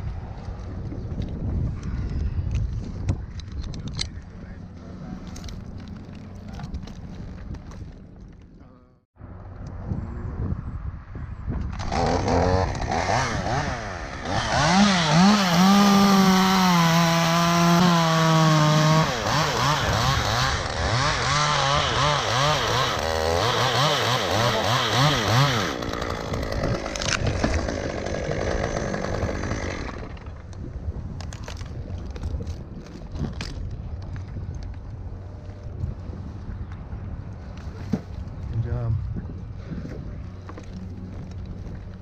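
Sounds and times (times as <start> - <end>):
chainsaw cutting wood: 11.7 - 30.5.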